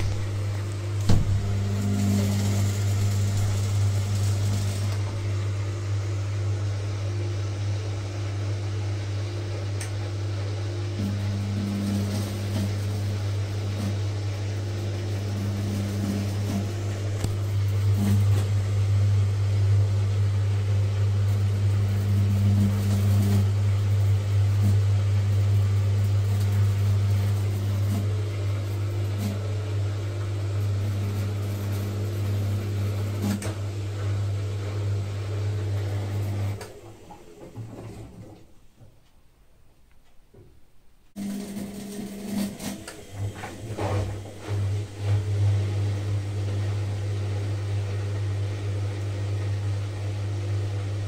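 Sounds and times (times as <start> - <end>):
higher electrical buzz: 0.0 - 29.4
low electrical hum: 0.0 - 34.7.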